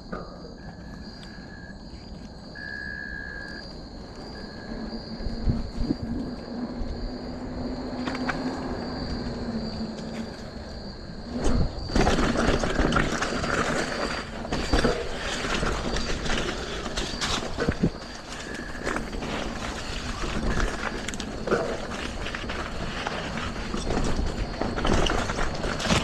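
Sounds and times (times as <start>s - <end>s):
bike tyres rolling on dirt: 0.0s - 26.0s
bike rattling and knocking: 11.2s - 26.0s.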